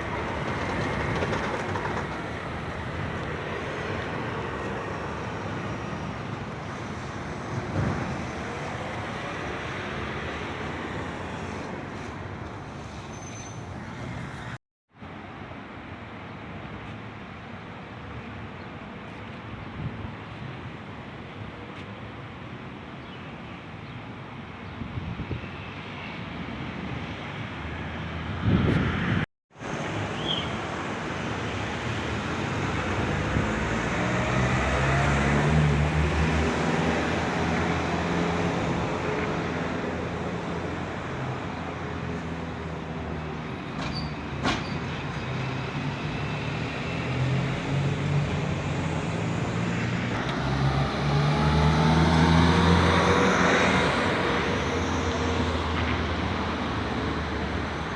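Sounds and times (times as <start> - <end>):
road traffic din: 0.0 - 57.9
engine speeding up: 32.8 - 39.0, 46.8 - 56.2.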